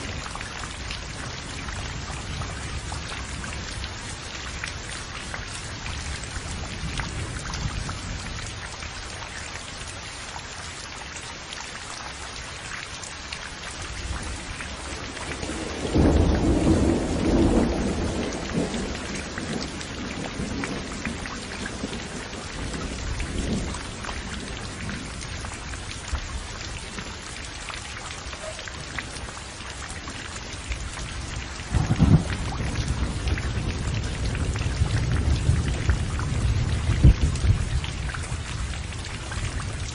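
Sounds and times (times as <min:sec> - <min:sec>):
rain pouring: 0:00.0 - 0:39.9
thunder rumbling: 0:14.1 - 0:25.5, 0:30.8 - 0:39.9.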